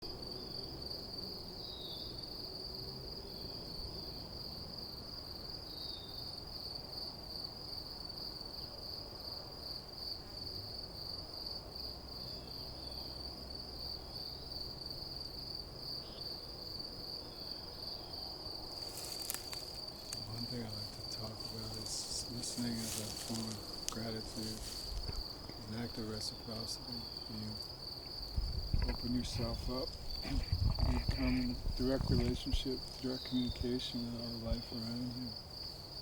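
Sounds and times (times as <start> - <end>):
insects trilling: 0.0 - 36.0
low background rumble: 28.3 - 33.8.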